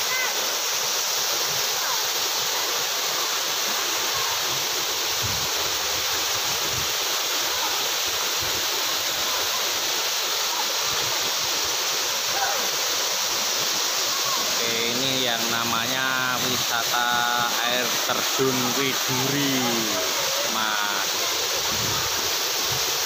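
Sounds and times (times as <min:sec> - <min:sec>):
waterfall splashing: 0:00.0 - 0:23.0.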